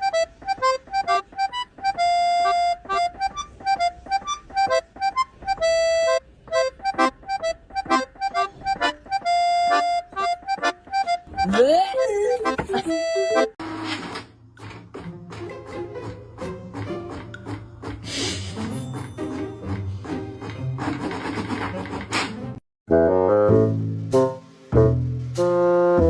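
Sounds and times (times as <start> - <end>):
bouncy background music: 0.0 - 13.6, 14.6 - 26.0.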